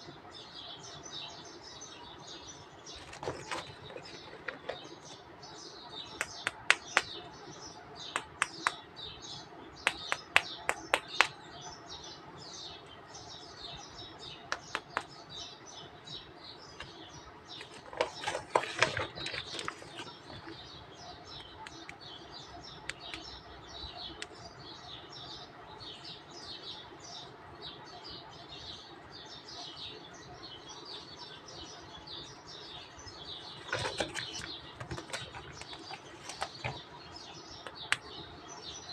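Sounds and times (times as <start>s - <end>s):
small birds chirping: 0.0s - 38.9s
sharp clicks and taps: 6.2s - 7.4s, 8.1s - 8.9s, 9.8s - 11.4s, 14.5s - 15.2s, 22.8s - 23.3s, 33.6s - 38.2s.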